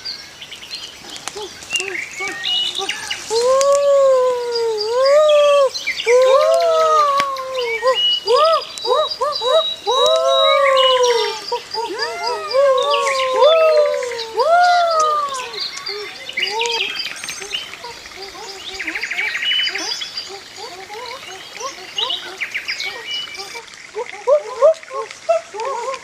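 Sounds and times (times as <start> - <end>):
animal cries rising and falling: 1.4 - 16.9
high bird chirps: 7.7 - 20.5.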